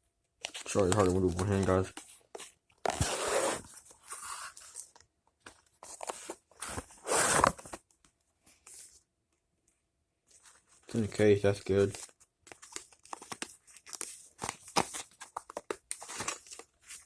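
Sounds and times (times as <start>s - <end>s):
packaging crinkling and tearing: 11.9s - 17.0s.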